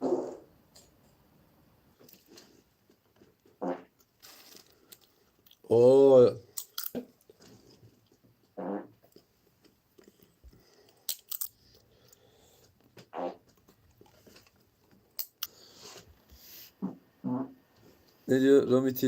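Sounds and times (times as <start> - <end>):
person chewing: 9.0 - 12.9, 13.5 - 15.6.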